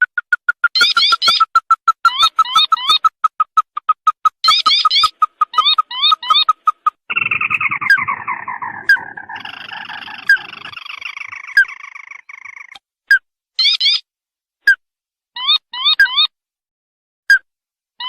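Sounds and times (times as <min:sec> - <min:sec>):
crake calling: 0:00.0 - 0:12.8.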